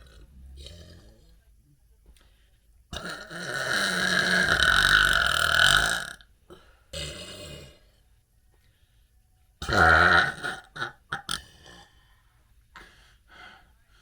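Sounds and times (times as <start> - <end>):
person burping: 0.0 - 1.4, 2.9 - 7.8, 9.6 - 11.9.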